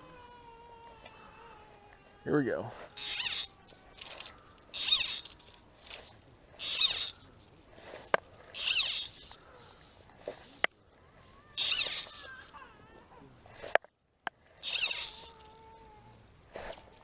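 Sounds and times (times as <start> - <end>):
fishing line zipping hiss: 2.9 - 7.2, 7.8 - 9.4, 11.5 - 12.6, 14.5 - 15.7.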